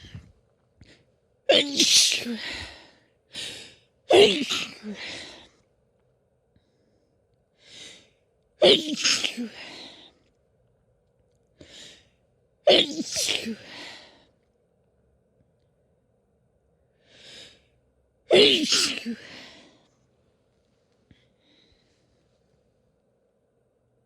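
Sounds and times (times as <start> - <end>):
woman sneezing: 1.5 - 2.7, 4.1 - 5.1, 8.6 - 9.7, 12.7 - 13.7, 18.3 - 19.5.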